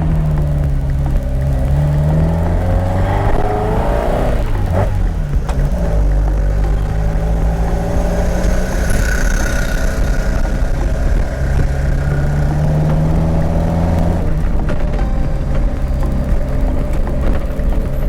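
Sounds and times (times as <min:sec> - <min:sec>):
sports car engine running: 0:00.0 - 0:18.0.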